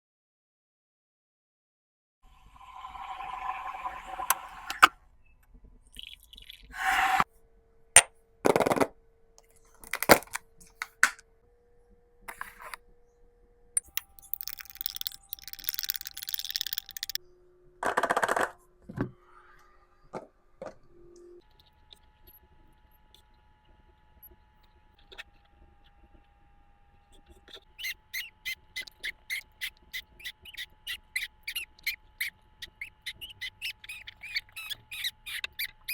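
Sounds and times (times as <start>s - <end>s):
spoon clicking and scraping: 13.8s - 17.2s
parrot calls: 27.8s - 35.9s.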